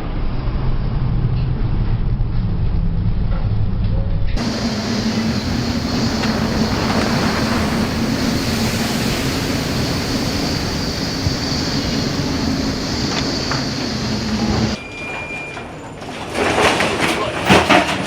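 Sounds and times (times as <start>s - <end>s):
low mechanical hum: 0.0s - 14.8s
storm wind: 0.0s - 14.8s
rough sea: 4.4s - 18.0s.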